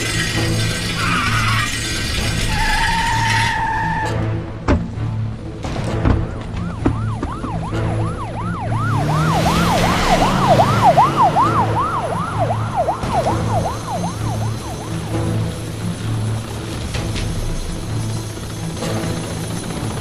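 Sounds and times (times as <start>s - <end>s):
police siren yelping: 6.5s - 15.3s
rushing noise: 8.9s - 18.2s.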